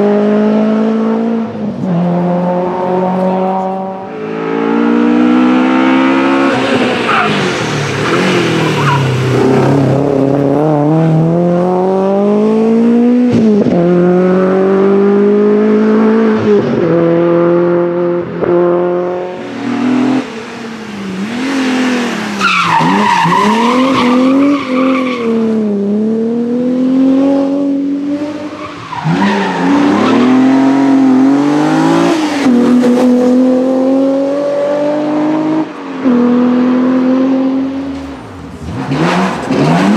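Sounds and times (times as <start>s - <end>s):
rally car engine revving: 0.0s - 39.9s
tyres squealing: 7.1s - 9.2s, 20.9s - 25.4s.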